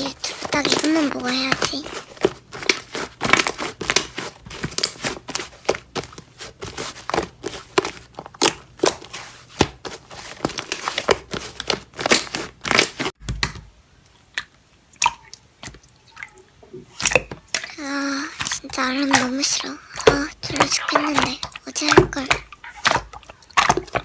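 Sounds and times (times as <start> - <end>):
slime crackling and popping: 0.1 - 9.8, 10.5 - 13.6.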